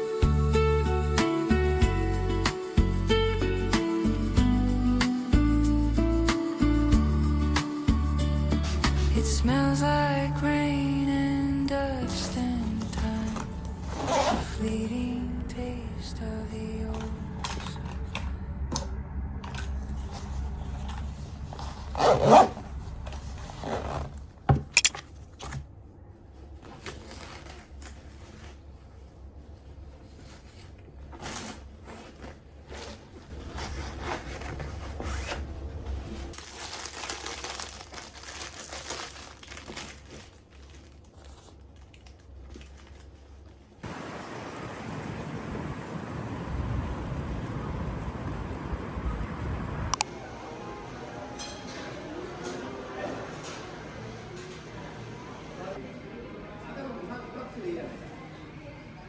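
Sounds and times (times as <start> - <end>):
rustling and scraping: 8.5 - 9.5, 12.0 - 15.1, 19.4 - 25.7, 26.3 - 36.5
steady background hiss: 43.8 - 48.2.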